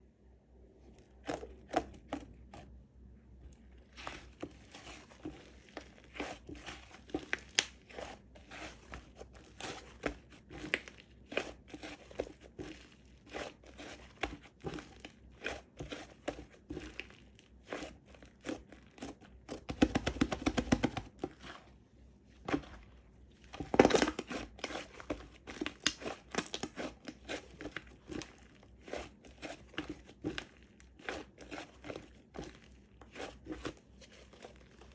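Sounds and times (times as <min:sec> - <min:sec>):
slime squelching: 0:00.8 - 0:02.8, 0:03.4 - 0:34.9
slime being kneaded: 0:00.9 - 0:02.7, 0:03.4 - 0:34.9.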